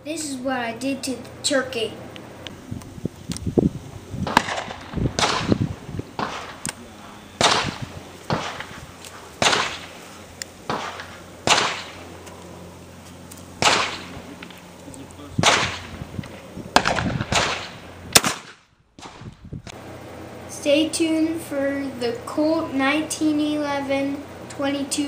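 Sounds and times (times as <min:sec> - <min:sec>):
gunshot cracks with echo: 0:04.2 - 0:05.6, 0:06.2 - 0:06.7, 0:07.4 - 0:08.8, 0:09.4 - 0:10.0, 0:10.7 - 0:12.0, 0:13.6 - 0:14.2, 0:15.4 - 0:16.0, 0:16.8 - 0:19.3.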